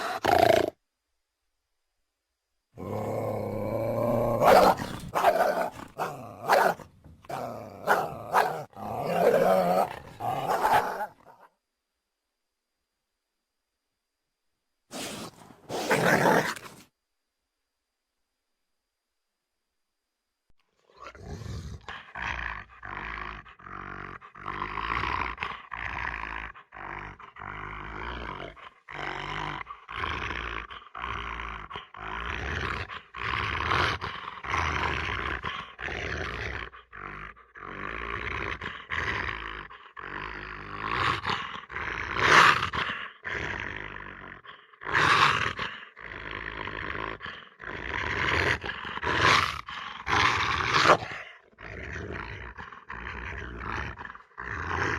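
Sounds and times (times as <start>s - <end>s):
creature harsh calls: 2.8s - 11.3s, 15.0s - 16.8s.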